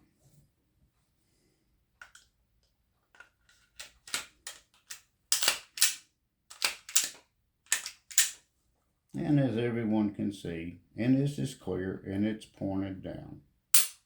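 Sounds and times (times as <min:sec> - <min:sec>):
pistol slide racking: 0:03.8 - 0:08.4.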